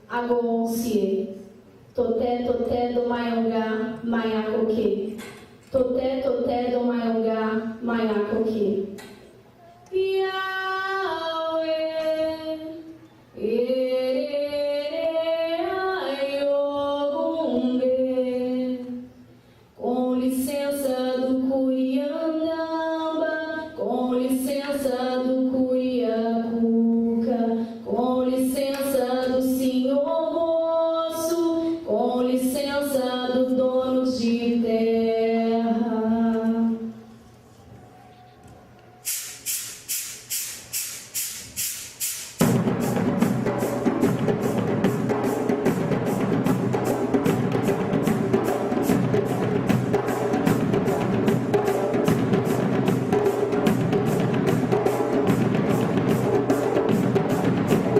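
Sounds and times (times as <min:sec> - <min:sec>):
woman singing unaccompanied chant: 0:09.9 - 0:19.1, 0:19.8 - 0:37.0.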